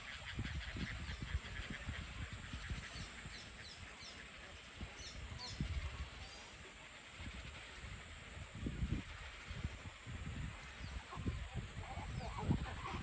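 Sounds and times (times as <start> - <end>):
outdoor ambience: 0.0 - 13.0
birds chirping: 10.3 - 13.0.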